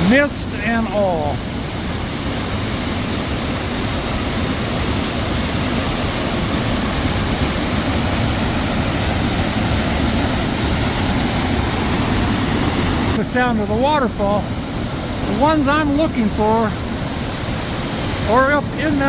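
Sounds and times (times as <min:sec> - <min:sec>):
waterfall roaring: 0:00.0 - 0:19.0.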